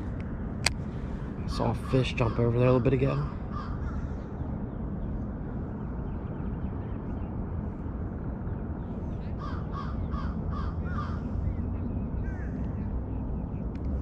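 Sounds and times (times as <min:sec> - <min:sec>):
steady low rumble: 0:00.0 - 0:14.0
bird calling: 0:01.5 - 0:04.4, 0:09.3 - 0:12.9.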